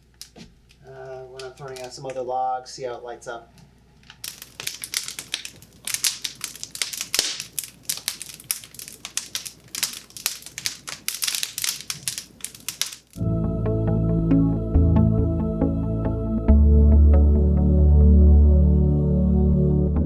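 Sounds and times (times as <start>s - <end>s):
wood fire crackling and popping: 1.0s - 2.2s, 4.0s - 13.2s
music: 13.2s - 20.0s.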